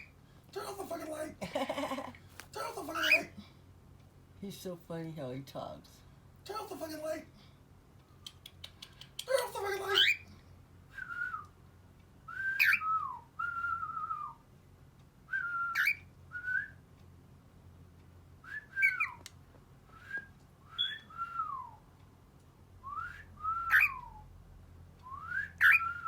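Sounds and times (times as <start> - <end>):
cockatiel whistling: 12.3 - 14.4, 15.3 - 16.8, 18.5 - 19.2, 19.9 - 21.8, 22.9 - 24.2, 25.1 - 26.0.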